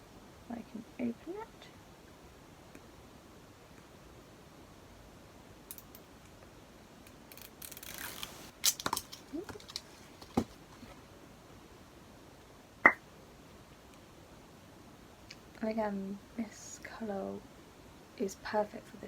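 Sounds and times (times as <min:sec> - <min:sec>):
packaging rustling: 0:07.4 - 0:11.0.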